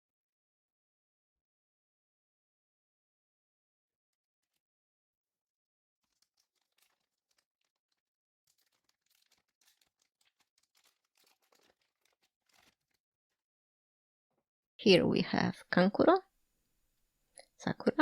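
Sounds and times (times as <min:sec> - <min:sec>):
foil pack crinkling and tearing: 0:06.0 - 0:13.0.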